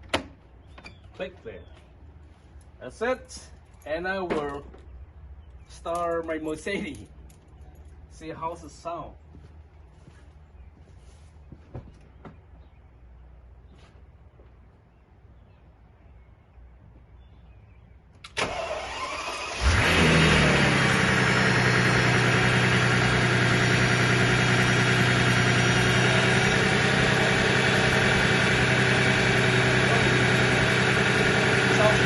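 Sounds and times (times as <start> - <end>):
engine starter cranking: 18.2 - 21.1
car engine idling: 18.5 - 32.0.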